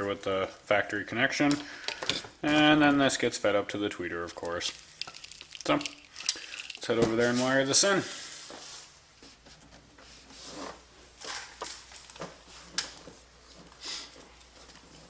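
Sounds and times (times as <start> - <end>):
wiring rustling and clicking: 4.3 - 7.5.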